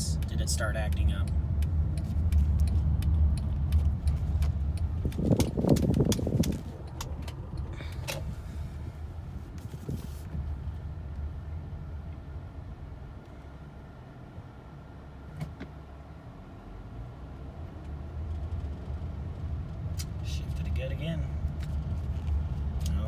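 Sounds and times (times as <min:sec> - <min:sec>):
engine and road rumble: 0:00.0 - 0:23.0
light rattles and clicks: 0:00.2 - 0:08.4.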